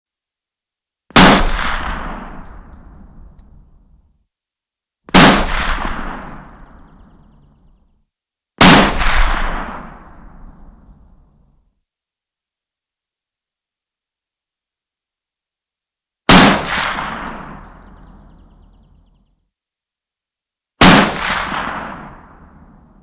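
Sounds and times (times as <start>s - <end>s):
rifle shots with rolling echo: 1.1s - 3.9s, 5.1s - 7.6s, 8.6s - 11.2s, 16.3s - 19.2s, 20.8s - 23.0s.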